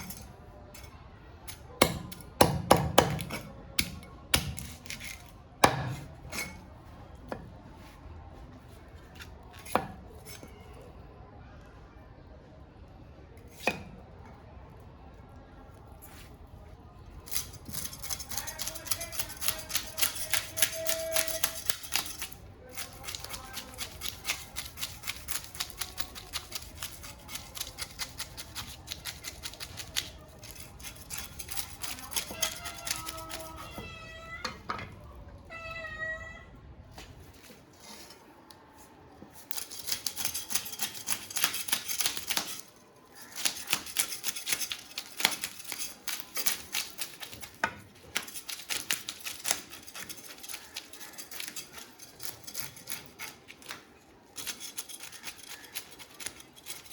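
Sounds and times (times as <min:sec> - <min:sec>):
knife scraping fish: 0:00.0 - 0:00.9, 0:01.5 - 0:06.7, 0:17.2 - 0:33.9, 0:39.3 - 0:56.9.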